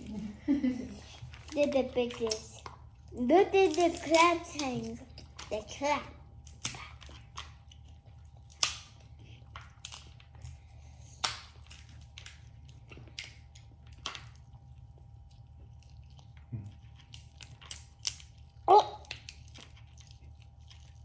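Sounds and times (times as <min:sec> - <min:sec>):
steady low hum: 0:00.0 - 0:21.0
chewing and biting: 0:01.0 - 0:21.0
crab shell cracking: 0:06.4 - 0:10.6, 0:11.2 - 0:14.4, 0:16.8 - 0:20.2.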